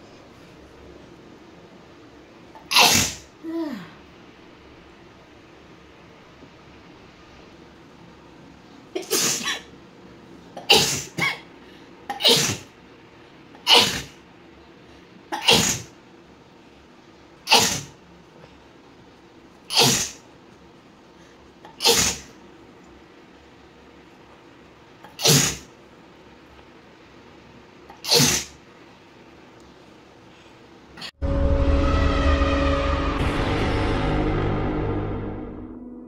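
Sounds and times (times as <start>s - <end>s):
woman sneezing: 2.7s - 4.0s, 10.7s - 11.4s, 12.2s - 12.7s, 13.6s - 14.2s, 15.4s - 15.9s, 17.5s - 17.9s, 19.7s - 20.2s, 21.8s - 22.3s, 25.1s - 25.7s, 27.9s - 28.6s.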